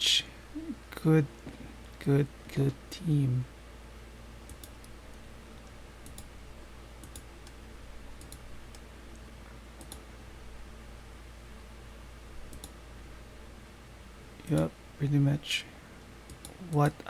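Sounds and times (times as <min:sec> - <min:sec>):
low steady hum: 0:00.0 - 0:17.0
computer mouse clicking: 0:04.4 - 0:05.2, 0:06.0 - 0:06.3, 0:07.0 - 0:07.6, 0:08.2 - 0:10.1, 0:12.5 - 0:12.8, 0:16.3 - 0:16.8.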